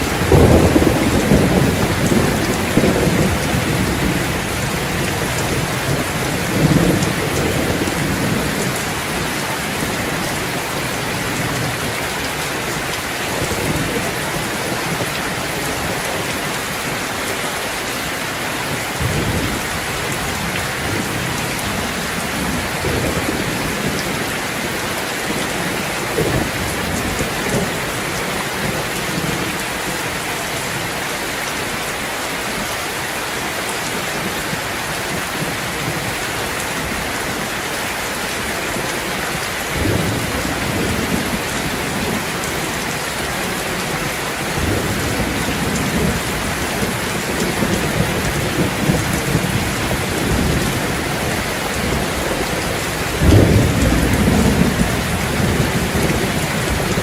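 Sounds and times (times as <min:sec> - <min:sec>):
low thunder rumbles: 0:00.0 - 0:11.8, 0:39.7 - 0:57.0
steady rain: 0:00.0 - 0:57.0.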